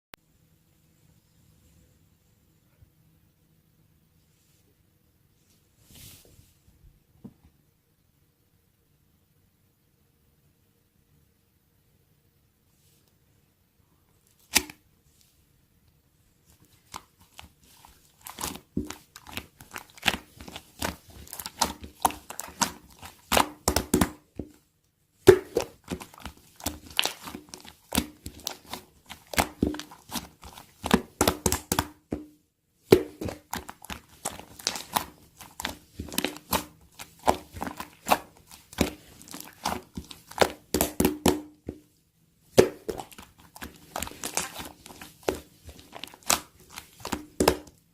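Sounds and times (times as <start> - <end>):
slime clicking and crackling: 16.6 - 24.3, 25.2 - 32.1, 32.9 - 41.6, 42.6 - 47.8.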